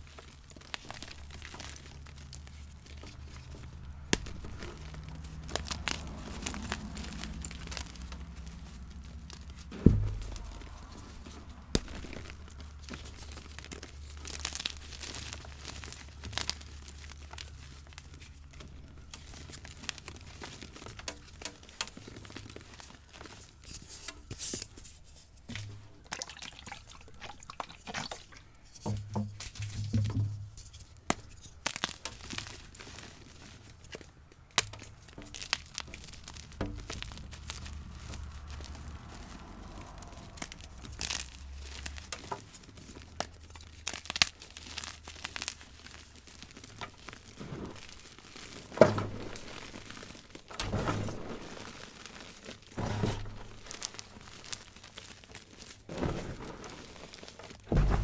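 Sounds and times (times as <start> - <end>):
chalk crunching and crackling: 0.0 - 58.0
soft low thuds: 9.4 - 12.6, 57.7 - 58.0.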